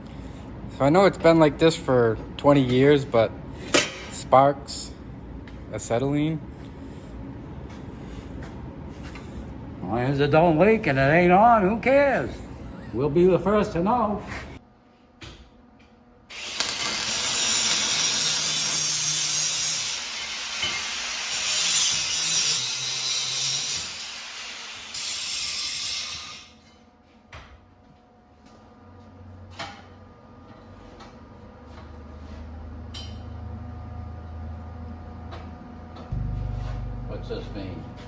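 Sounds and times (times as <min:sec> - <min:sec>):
power tool grinding steel: 0:16.3 - 0:26.6
low hum: 0:35.9 - 0:38.0.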